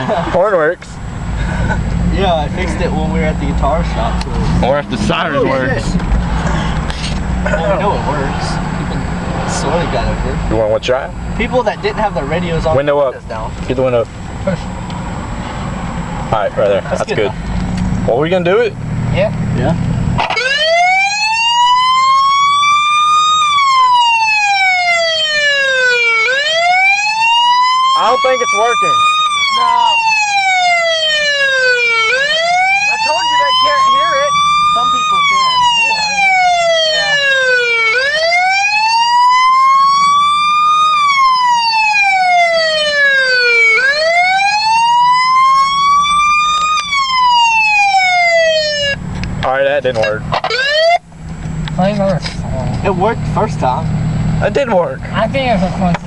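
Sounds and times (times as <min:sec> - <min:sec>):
siren wailing: 0:20.2 - 0:49.1, 0:50.0 - 0:51.1.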